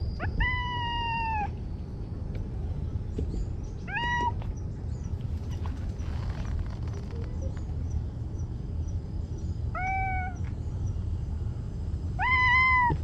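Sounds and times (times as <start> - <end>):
steady low rumble: 0.0 - 13.0
cat meowing: 0.2 - 1.5, 3.9 - 4.4, 9.8 - 10.5, 12.2 - 13.0.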